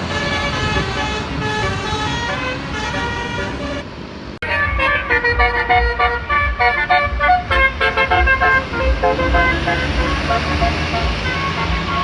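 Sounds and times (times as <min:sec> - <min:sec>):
bus musical air horn: 0:00.0 - 0:12.0.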